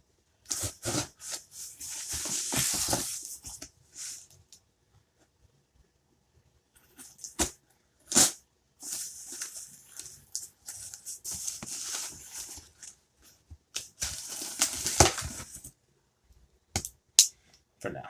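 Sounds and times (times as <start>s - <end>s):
packaging rustling and crinkling: 0.5s - 4.3s, 8.1s - 12.9s, 13.8s - 15.7s.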